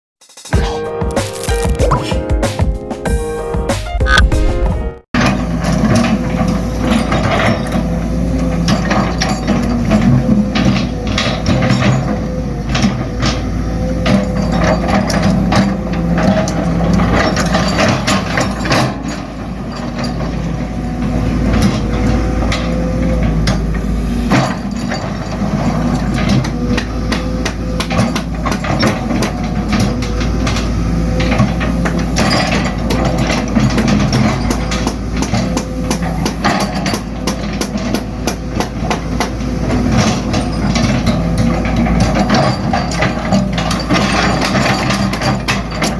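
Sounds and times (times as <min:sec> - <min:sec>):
excavator engine running: 0:00.5 - 0:45.9
metal bucket clanking and scraping: 0:14.1 - 0:20.9, 0:39.7 - 0:45.9.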